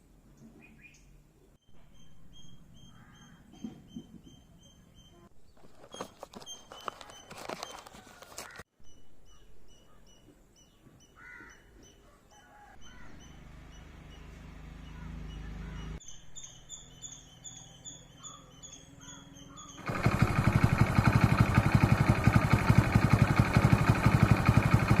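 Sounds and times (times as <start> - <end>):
motorcycle engine rattling: 5.5 - 8.6, 19.1 - 25.0.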